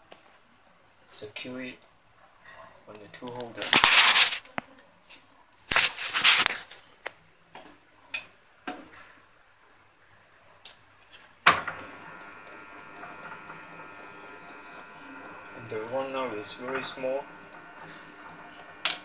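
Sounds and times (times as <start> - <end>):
rustling: 5.7 - 7.0.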